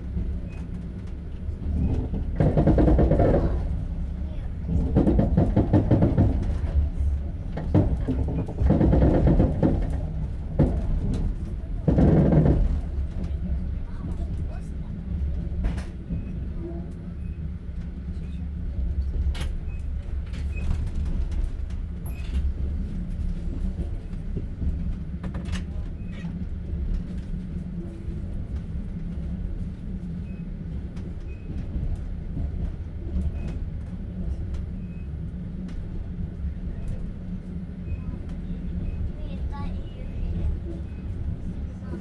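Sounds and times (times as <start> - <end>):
rumble of train wheels on track: 0.0 - 42.0
knocks and clicks of carriage: 0.4 - 3.8, 4.6 - 6.8, 7.5 - 13.4, 15.2 - 16.4, 19.0 - 27.4.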